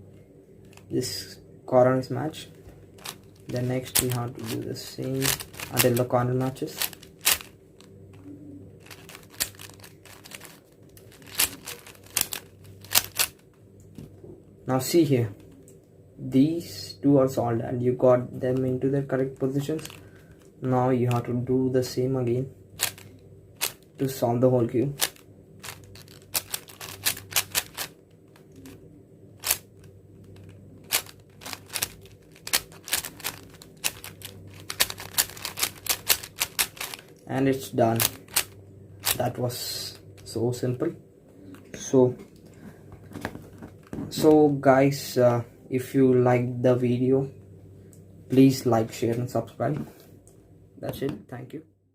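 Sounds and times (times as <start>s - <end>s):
faint steady hum: 0.0s - 51.9s
puzzle cube layers clicking: 3.0s - 6.1s, 6.7s - 7.5s, 8.8s - 13.4s, 25.0s - 27.9s, 29.4s - 29.6s, 30.3s - 37.1s.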